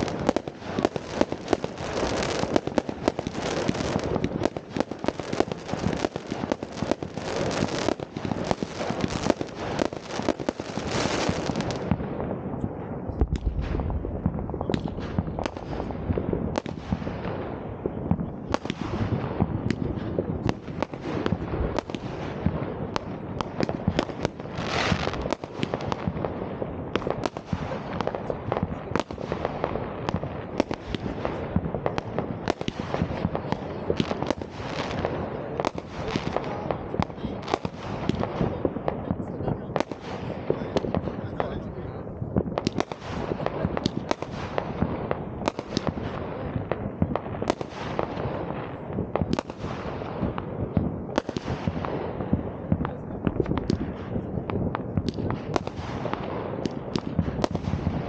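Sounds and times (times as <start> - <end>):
fireworks bangs and crackling: 0.0 - 58.0.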